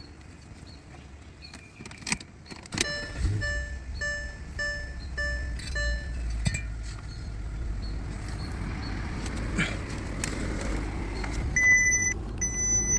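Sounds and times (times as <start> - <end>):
dashboard warning beep: 2.8 - 8.0, 11.6 - 12.9.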